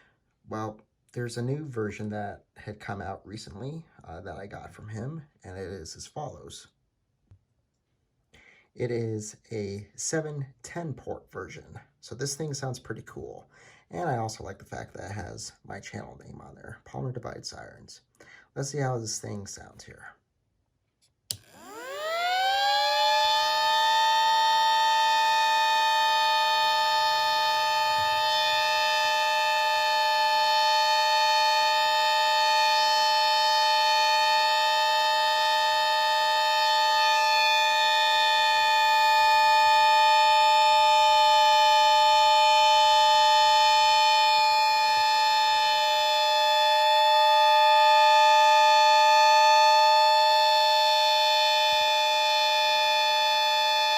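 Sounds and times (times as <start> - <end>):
click: 21.0 - 21.5
siren winding up to dual-tone wail: 21.3 - 53.9.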